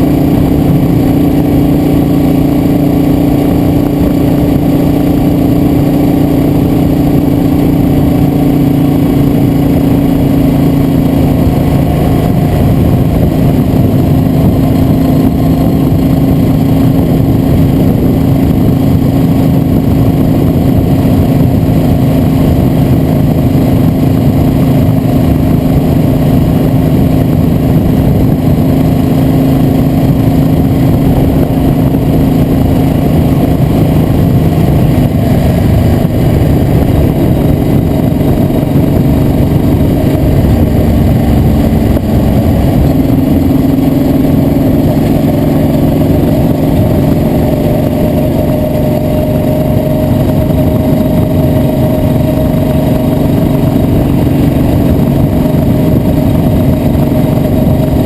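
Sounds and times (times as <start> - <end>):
vehicle engine running: 0.0 - 58.0.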